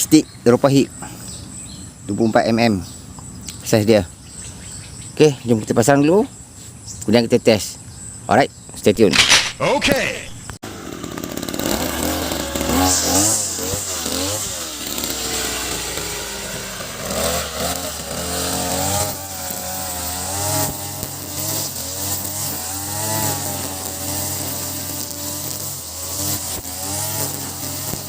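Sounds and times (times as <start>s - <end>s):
brush cutter engine revving: 8.9s - 28.0s.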